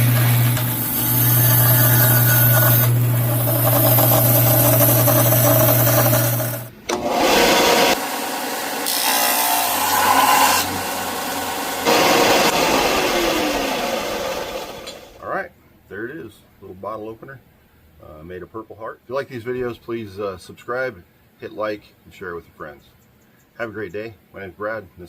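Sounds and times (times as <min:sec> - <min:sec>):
power tool cutting wood: 0:00.0 - 0:15.2.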